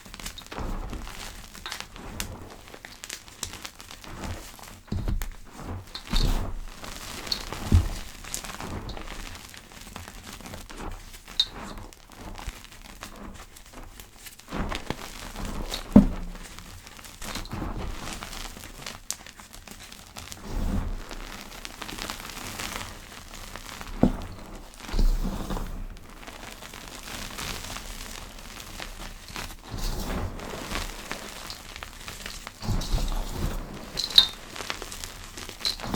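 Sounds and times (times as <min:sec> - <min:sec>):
chalk crunching: 0:14.7 - 0:18.9.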